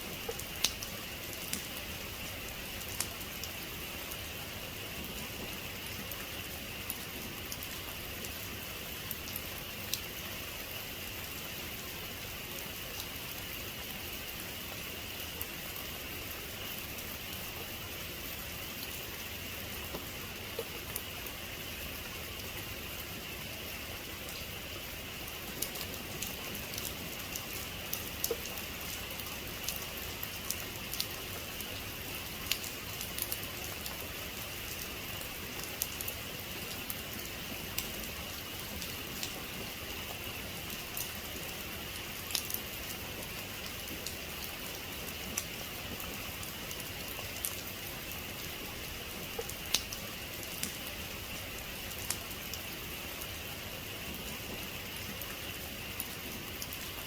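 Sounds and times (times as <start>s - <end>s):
heavy rain falling: 18.2s - 57.0s.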